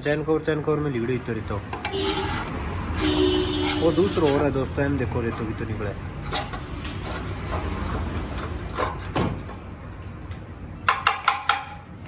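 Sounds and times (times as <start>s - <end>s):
rubbing and scraping metal part: 1.0s - 9.8s
sharp metallic knocks: 10.8s - 11.9s.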